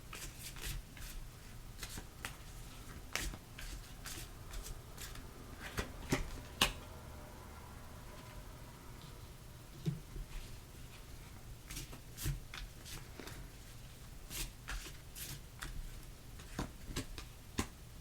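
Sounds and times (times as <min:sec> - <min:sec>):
cards being shuffled: 0:01.8 - 0:06.8, 0:16.4 - 0:17.7.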